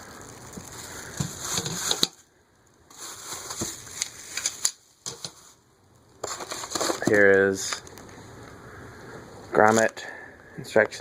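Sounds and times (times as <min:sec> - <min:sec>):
packaging rustling: 0:00.0 - 0:02.3, 0:02.9 - 0:05.6, 0:06.2 - 0:08.0.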